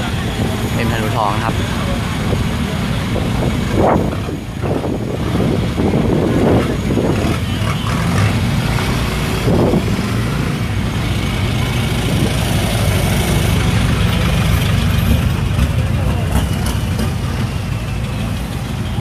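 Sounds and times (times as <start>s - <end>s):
vehicle engines rumbling: 0.0s - 19.0s.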